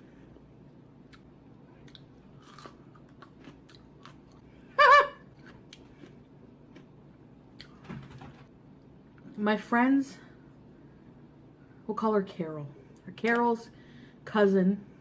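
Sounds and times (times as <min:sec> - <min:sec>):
crunching and chewing: 0:00.3 - 0:07.8.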